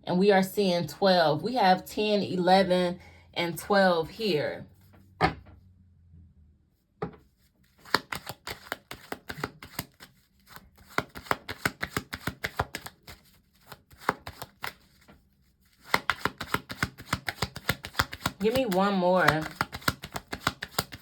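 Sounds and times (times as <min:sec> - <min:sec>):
cards being shuffled: 0:07.3 - 0:21.0.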